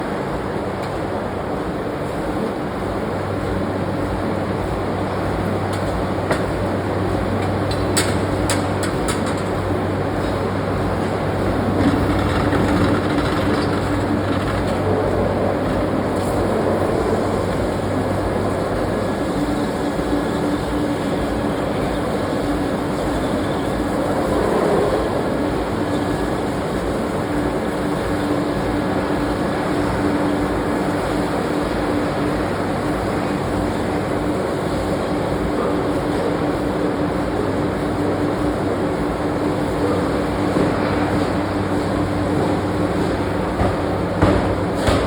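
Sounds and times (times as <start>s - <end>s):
forging machinery rumbling: 8.7s - 20.5s.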